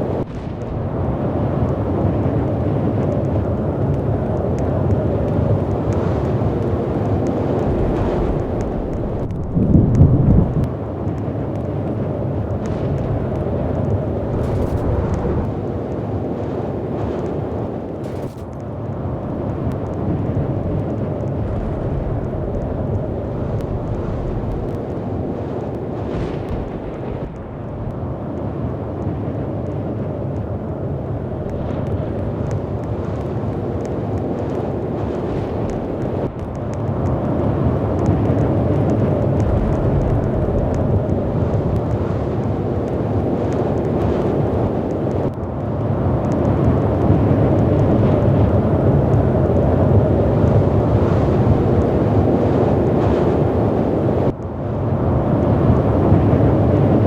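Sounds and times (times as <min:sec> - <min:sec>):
loud low rumbling: 0:00.0 - 0:02.5, 0:07.6 - 0:10.7, 0:12.7 - 0:15.9, 0:18.0 - 0:25.3
faint clicks: 0:01.6 - 0:30.7, 0:31.3 - 0:53.4
faint ticks: 0:02.5 - 0:17.4, 0:18.0 - 0:30.6, 0:31.3 - 0:52.7.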